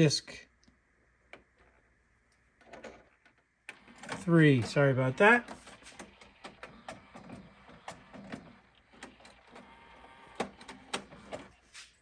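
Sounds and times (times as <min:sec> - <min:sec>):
cd changer mechanism clicks: 0:03.7 - 0:11.5.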